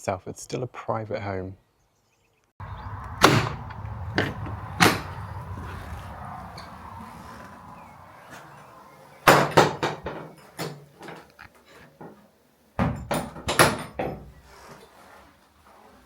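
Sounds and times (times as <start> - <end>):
sharp knocks and clunks: 2.6 - 8.5, 9.2 - 11.2, 12.8 - 14.4.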